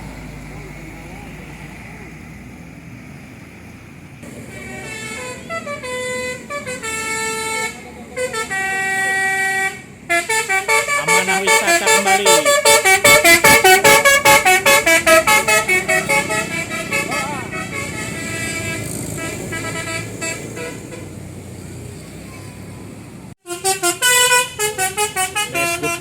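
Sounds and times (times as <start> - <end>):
fast staccato horn blasts: 4.2 - 21.1, 23.4 - 26.0
bus horn playing a tune: 4.2 - 21.2, 23.4 - 26.0.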